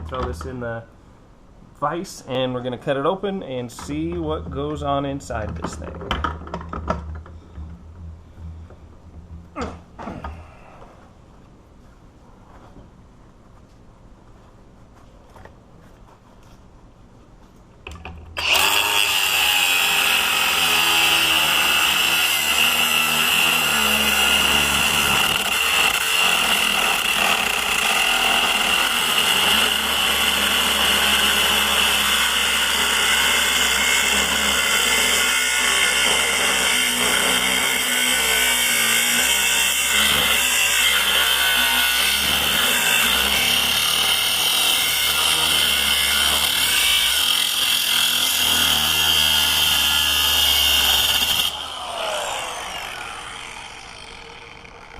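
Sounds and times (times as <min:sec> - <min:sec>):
power tool cutting metal: 0:18.4 - 0:54.9.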